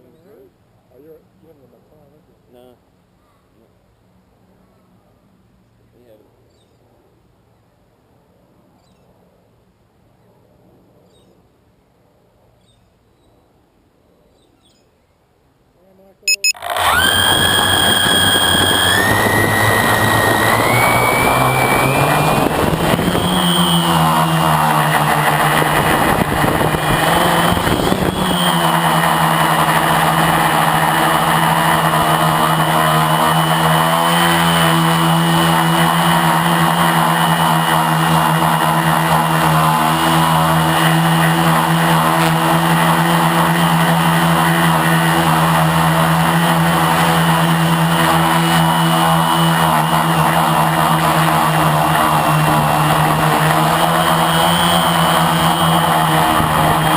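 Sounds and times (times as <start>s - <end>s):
quadcopter buzzing whine: 16.3s - 56.9s.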